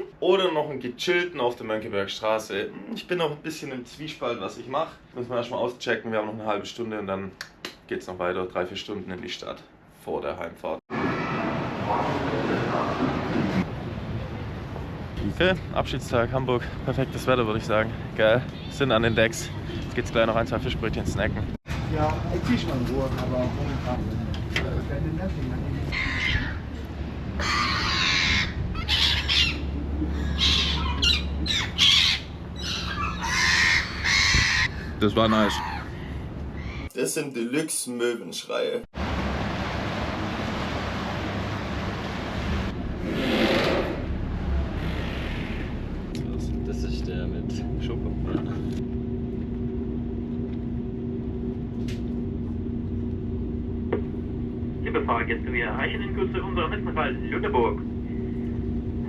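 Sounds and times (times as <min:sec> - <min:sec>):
train rumble and electrical hum: 0:11.3 - 0:36.7, 0:39.0 - 0:59.0
gulls crying: 0:16.8 - 0:20.3, 0:25.8 - 0:36.9
low steady hum: 0:43.9 - 0:59.0.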